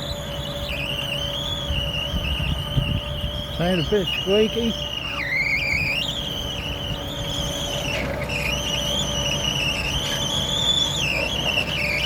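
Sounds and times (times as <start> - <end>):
harvester droning: 0.0 - 12.0
high-pitched wavering squeak: 0.0 - 12.0.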